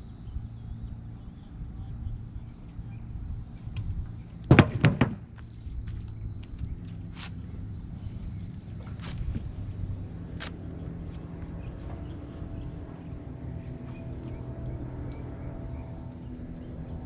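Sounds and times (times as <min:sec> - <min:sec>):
heavy thuds: 0:04.5 - 0:05.5.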